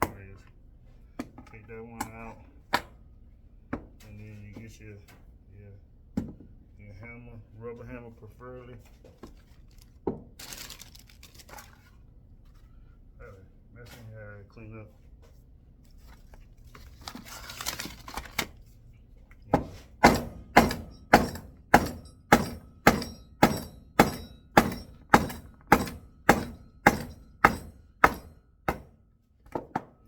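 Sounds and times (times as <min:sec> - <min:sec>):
rubber mallet striking metal: 0:20.0 - 0:29.0.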